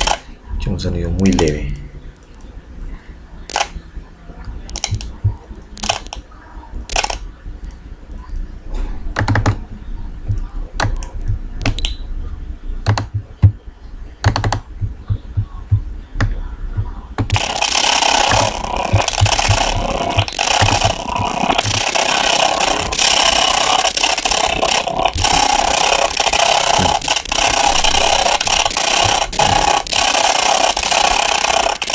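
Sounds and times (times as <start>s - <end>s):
keyboard and mouse clicking: 0.0s - 0.3s, 1.2s - 3.7s, 4.7s - 6.2s, 6.8s - 7.2s, 8.1s - 8.3s, 10.1s - 11.9s, 17.3s - 31.9s.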